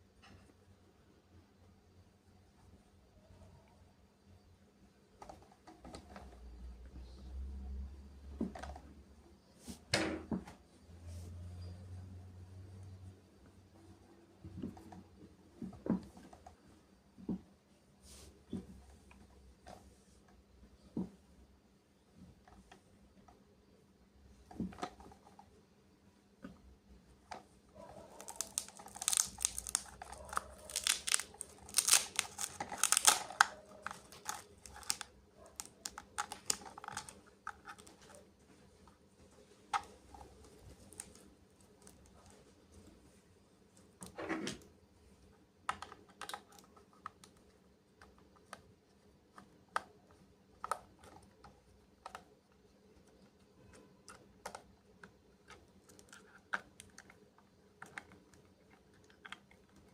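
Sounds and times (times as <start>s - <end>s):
plastic packaging crinkling and tearing: 28.1s - 38.2s, 39.8s - 42.0s.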